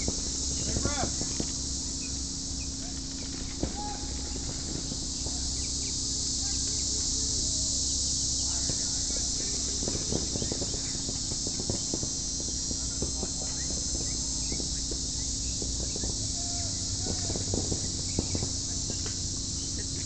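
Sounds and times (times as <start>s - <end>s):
crickets chirping: 0.0s - 20.0s.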